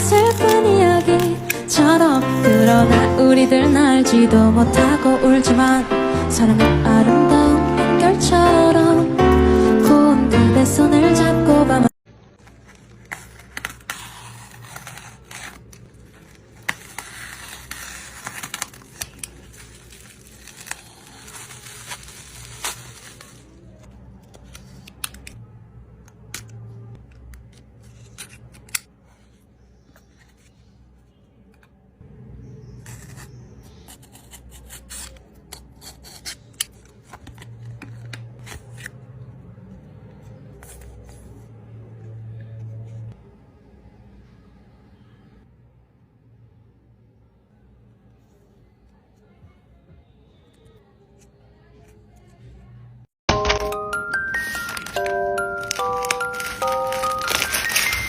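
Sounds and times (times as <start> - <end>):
plastic and paper rustling: 0.0 - 3.8, 12.3 - 25.4, 36.0 - 39.0, 53.5 - 58.0.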